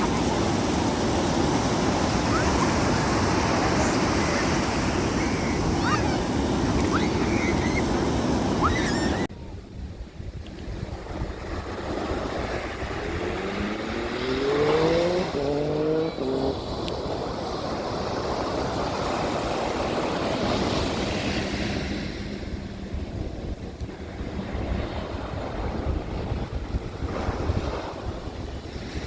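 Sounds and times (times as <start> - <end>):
surf: 0.0 - 9.3
wind: 0.0 - 29.0
vehicle engine accelerating: 12.5 - 17.0.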